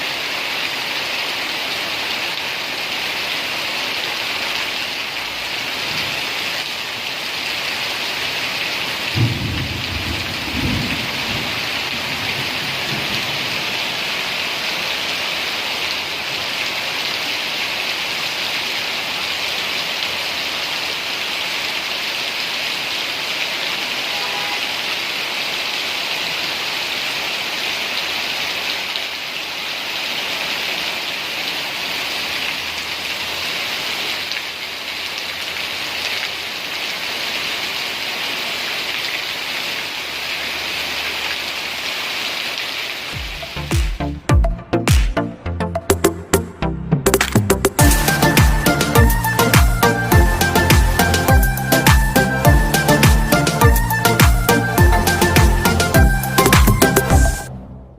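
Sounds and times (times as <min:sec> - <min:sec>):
steady rain falling: 0:00.0 - 0:45.3, 0:47.1 - 0:57.5
low rumble of thunder: 0:09.1 - 0:13.8.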